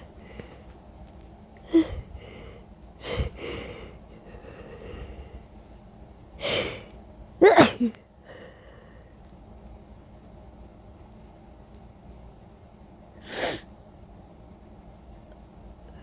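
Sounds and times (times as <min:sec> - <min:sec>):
noisy breath in: 0:01.7 - 0:05.6, 0:08.2 - 0:09.3, 0:13.2 - 0:13.7
person sneezing: 0:07.4 - 0:08.0.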